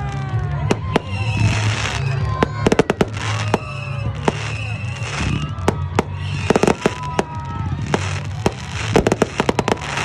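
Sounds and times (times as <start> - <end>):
fireworks crackling: 0.0 - 10.0
fireworks bangs: 0.1 - 10.0
falling whistling tones: 3.4 - 7.0.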